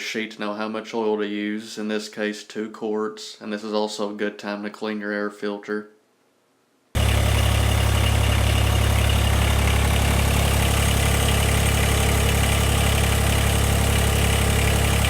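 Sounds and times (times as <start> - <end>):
tractor diesel engine idling: 7.0 - 15.0.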